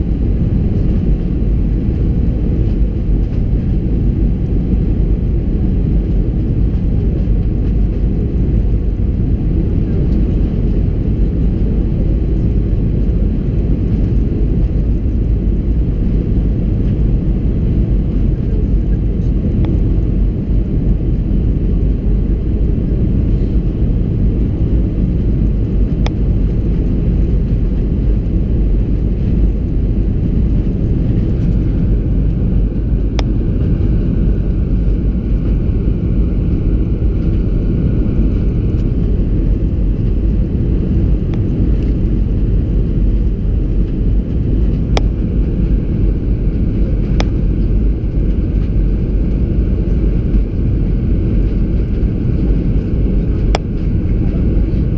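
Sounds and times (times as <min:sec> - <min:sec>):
aircraft cabin rumble: 0:00.0 - 0:54.9.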